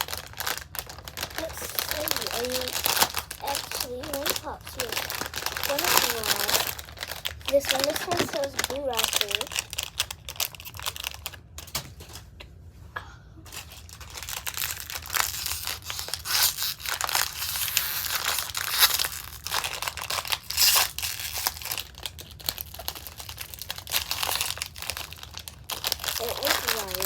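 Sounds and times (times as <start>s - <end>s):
plastic candy wrapper crinkling: 0.0s - 12.3s, 13.5s - 27.0s.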